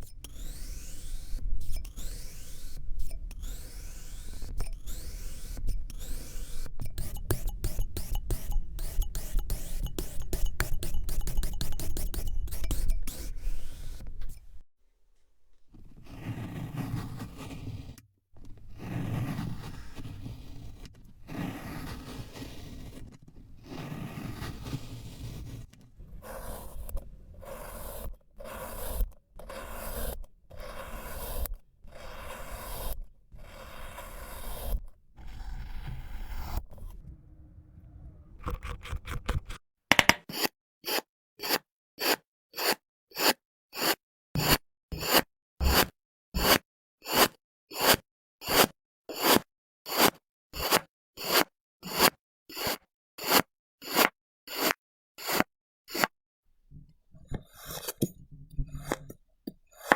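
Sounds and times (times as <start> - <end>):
slicing strokes through sand: 0.3 - 2.8, 27.4 - 35.7, 40.4 - 56.1.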